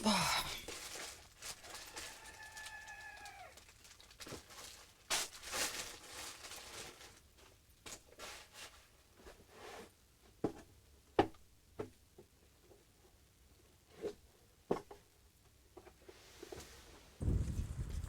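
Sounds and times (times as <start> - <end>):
rustling and handling noises: 0.0 - 10.0.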